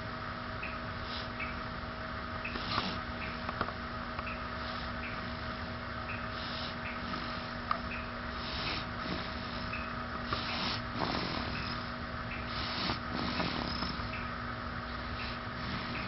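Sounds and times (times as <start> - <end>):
steady background hum: 0.0 - 16.0
person snoring: 8.4 - 11.9, 12.6 - 14.0.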